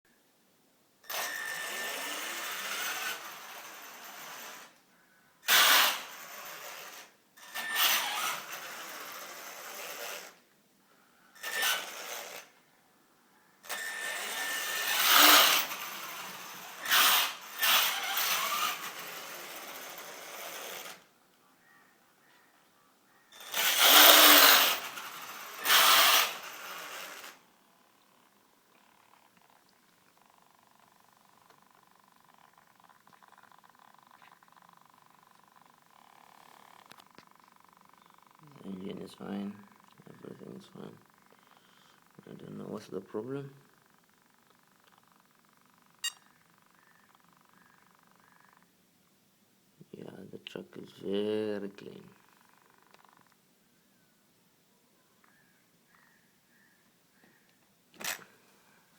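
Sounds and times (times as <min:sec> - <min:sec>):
electric motor throttle bursts: 0:01.1 - 0:04.7, 0:13.7 - 0:21.1, 0:23.4 - 0:27.4
grinding noise: 0:23.4 - 0:27.4.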